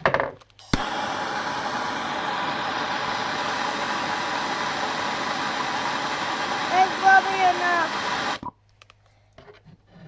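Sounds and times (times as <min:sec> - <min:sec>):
gas torch igniter click: 0:00.6 - 0:08.5
torch flame hissing: 0:00.6 - 0:08.5.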